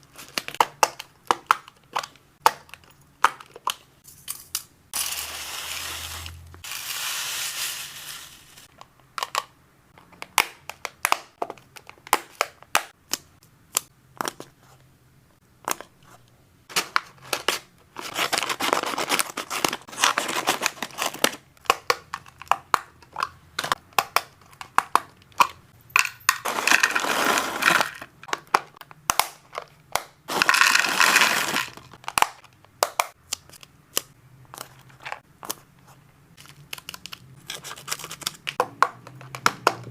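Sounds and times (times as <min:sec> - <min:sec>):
packaging crinkling and rustling: 0:16.7 - 0:21.5, 0:29.6 - 0:32.5, 0:36.4 - 0:38.6.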